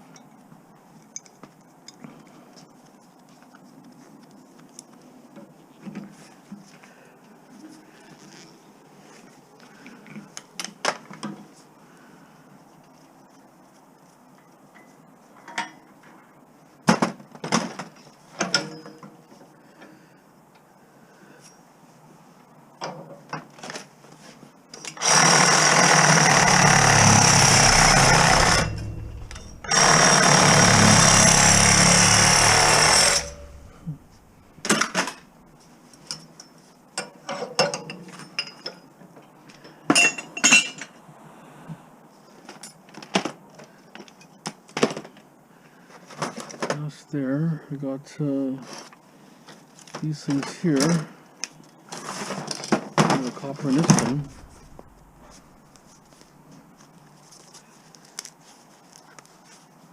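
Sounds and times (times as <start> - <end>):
power tool running: 25.0 - 35.2, 53.8 - 55.6.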